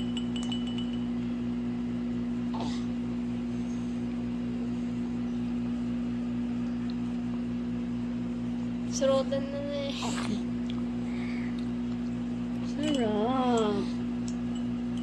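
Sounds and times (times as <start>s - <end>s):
low mechanical hum with pulsing: 0.0s - 15.0s.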